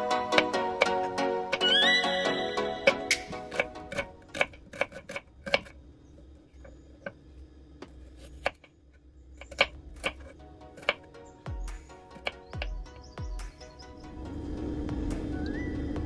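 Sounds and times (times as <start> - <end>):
faint background music: 9.4 - 16.0.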